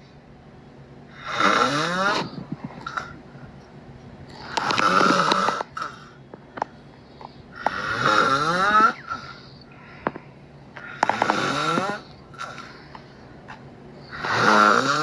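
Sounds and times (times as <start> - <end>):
person snoring: 1.1 - 3.2, 4.3 - 6.2, 7.5 - 9.4, 10.8 - 12.8, 14.0 - 15.0.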